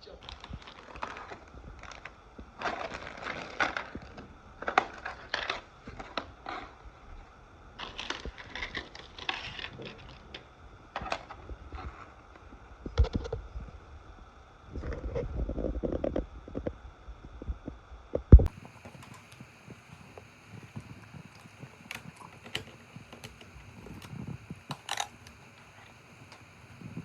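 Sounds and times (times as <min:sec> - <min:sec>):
crackling and scraping: 0:00.0 - 0:13.7, 0:14.7 - 0:17.4, 0:18.1 - 0:27.0
sharp clicks: 0:18.4 - 0:27.0.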